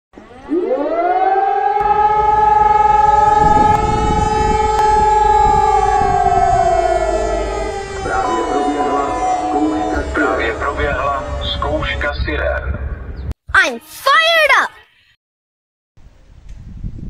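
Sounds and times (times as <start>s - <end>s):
civil defence siren: 0.2s - 12.4s.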